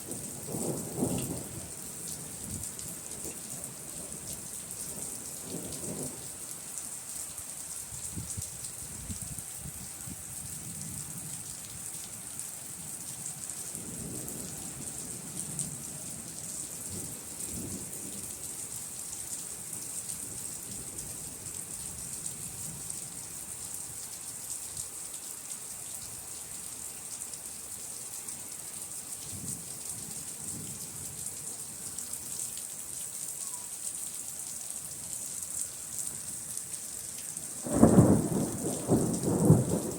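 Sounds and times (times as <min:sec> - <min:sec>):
steady rain hissing: 0:00.0 - 0:39.9
rolling thunder: 0:00.1 - 0:01.6, 0:37.6 - 0:39.9.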